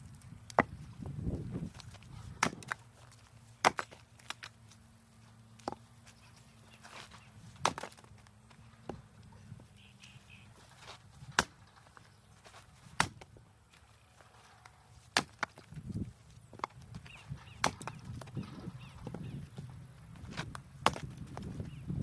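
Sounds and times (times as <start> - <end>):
firewood chopping cracks: 1.6 - 4.6, 5.5 - 5.9, 6.9 - 9.1, 10.8 - 13.4, 14.6 - 19.2, 20.2 - 21.5.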